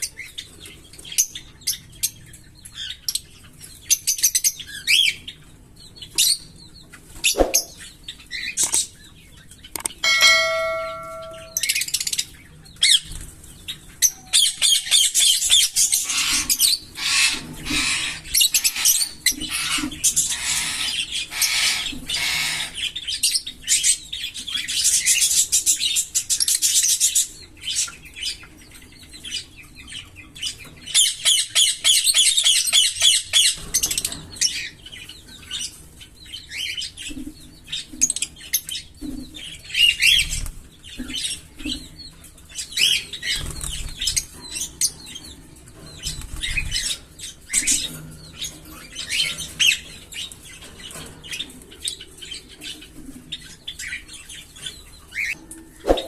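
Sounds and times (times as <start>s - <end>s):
birds rapid chattering song: 0.0s - 56.0s
birds chirping high calls: 2.7s - 13.2s.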